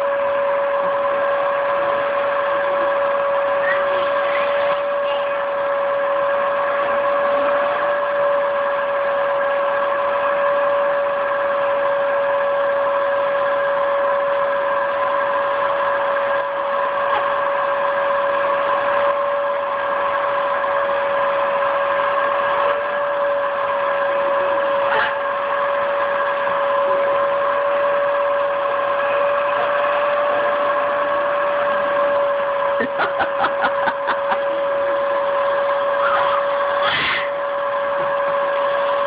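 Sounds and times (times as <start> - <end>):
vacuum cleaner motor whining: 0.0 - 39.0.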